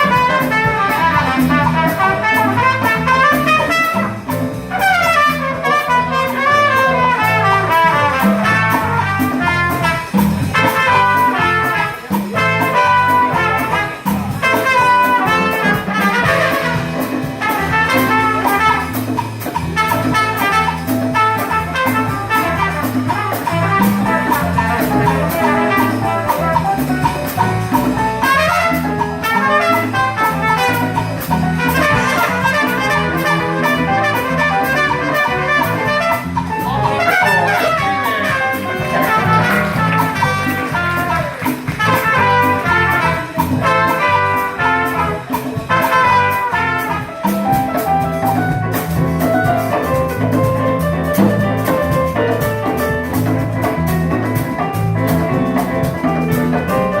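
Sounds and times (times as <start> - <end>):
bass: 0.0 - 57.0
drums: 0.0 - 57.0
trumpet playing jazz melody: 0.0 - 57.0.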